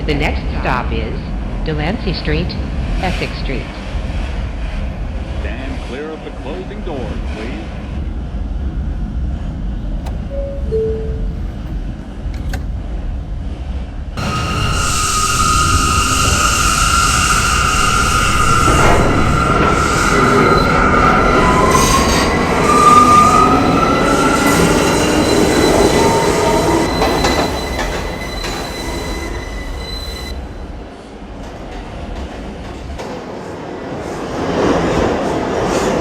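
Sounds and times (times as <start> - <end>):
subway train rumbling in tunnel: 0.0 - 36.0
high-pitched squealing: 14.2 - 30.4.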